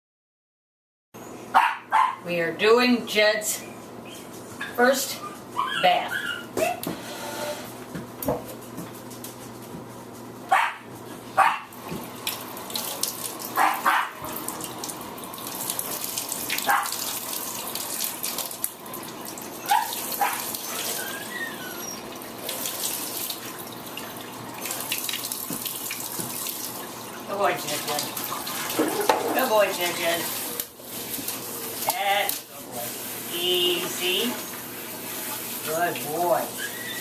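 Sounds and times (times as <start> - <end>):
dog barking: 1.5 - 2.3, 10.5 - 11.7, 13.6 - 14.2, 16.6 - 17.0, 19.6 - 20.6
water running from a tap: 11.7 - 37.0.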